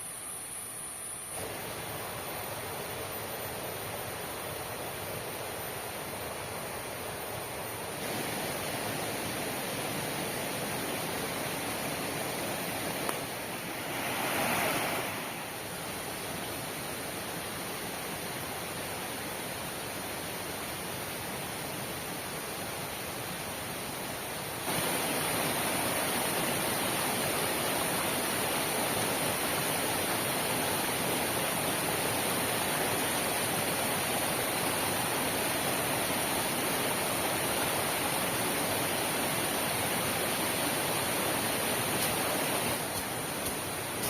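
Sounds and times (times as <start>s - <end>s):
heavy rain falling: 8.0s - 15.5s, 24.7s - 44.0s.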